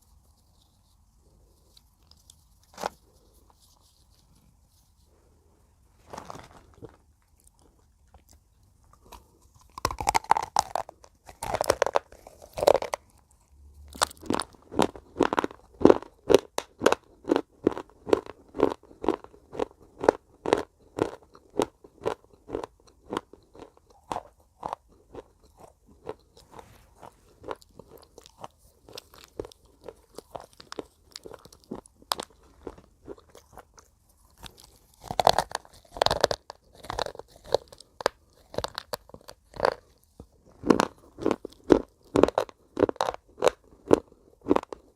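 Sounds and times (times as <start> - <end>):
crisp chewing crunches: 6.0 - 44.9
person biting with loud crunches: 9.0 - 13.3, 13.9 - 40.0, 40.6 - 44.9.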